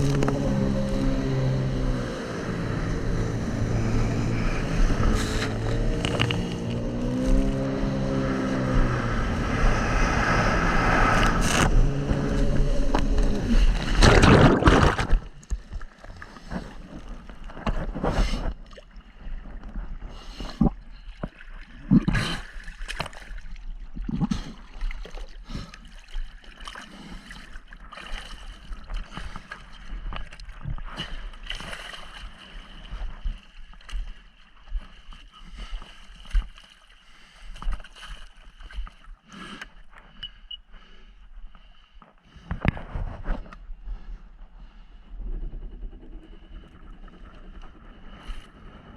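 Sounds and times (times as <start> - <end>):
jet ski engine running: 0.0 - 14.0, 44.7 - 48.9
water splashing and sloshing: 0.0 - 40.5.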